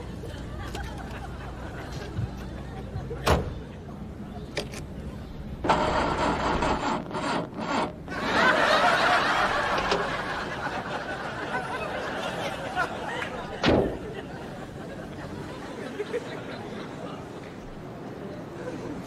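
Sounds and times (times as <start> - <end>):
audience laughter: 0.2 - 3.2, 8.1 - 17.4
rasping sound: 5.6 - 8.1.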